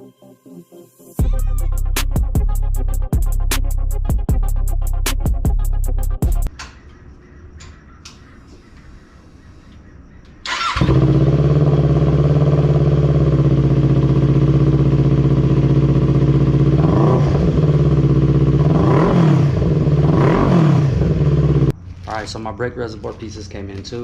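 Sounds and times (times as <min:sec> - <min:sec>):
motorcycle engine idling and revving: 0:10.2 - 0:22.0.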